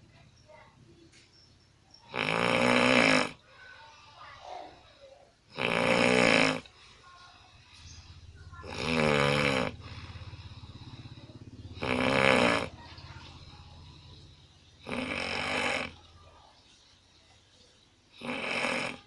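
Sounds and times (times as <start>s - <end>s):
person snoring loudly: 2.1s - 3.4s, 5.5s - 6.7s, 8.6s - 14.1s, 14.8s - 16.1s, 18.2s - 19.0s
low steady hum: 6.6s - 18.2s.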